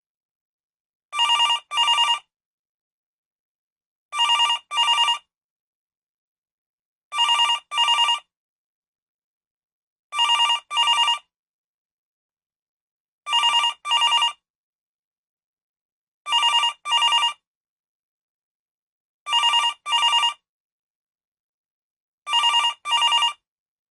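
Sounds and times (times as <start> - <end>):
electronic telephone ringing: 1.2 - 2.3, 4.2 - 5.3, 7.1 - 8.3, 10.2 - 11.3, 13.3 - 14.4, 16.3 - 17.4, 19.3 - 20.4, 22.3 - 23.4.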